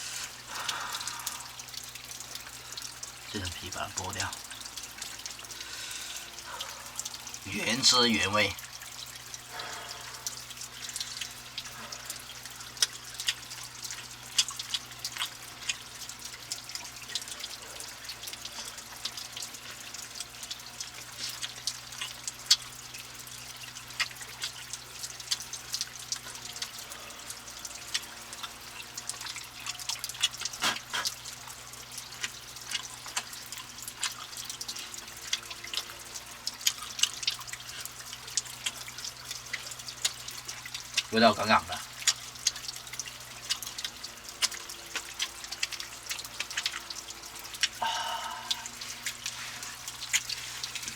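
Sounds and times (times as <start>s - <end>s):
water dripping: 0.0s - 50.9s.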